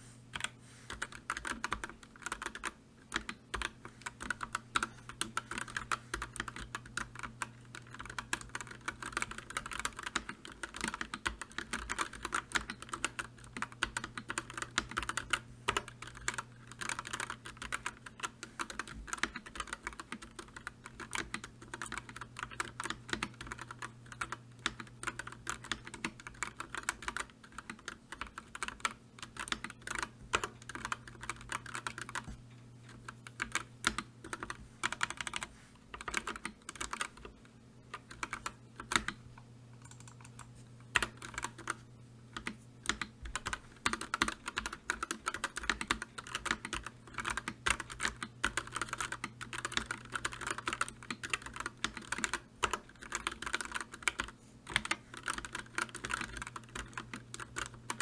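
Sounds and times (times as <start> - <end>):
keyboard typing clicks: 39.8 - 41.8, 42.4 - 58.0.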